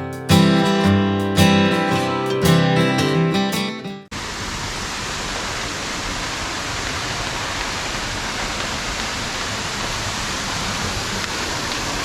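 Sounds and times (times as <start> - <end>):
waterfall splashing: 4.1 - 12.0.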